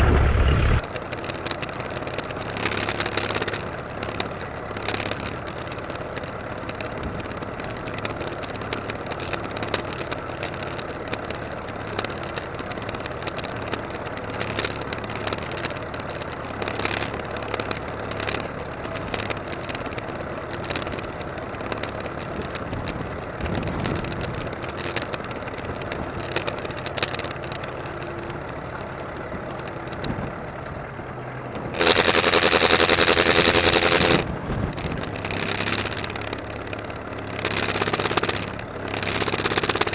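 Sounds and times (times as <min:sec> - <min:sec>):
loud pitched sound: 0:00.0 - 0:00.8
tractor diesel engine running: 0:00.0 - 0:39.9.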